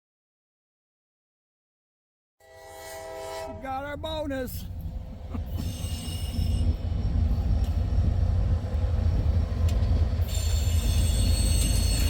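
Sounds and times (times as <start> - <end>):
train rumbling past: 2.4 - 12.0
high-pitched wheel squeal: 10.2 - 12.0.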